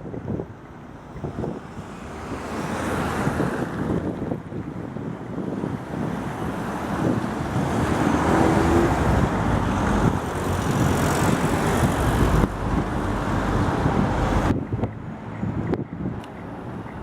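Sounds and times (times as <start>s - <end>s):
street traffic: 0.0s - 17.0s
wind on microphone: 0.0s - 17.0s
vehicle passing: 6.2s - 15.4s.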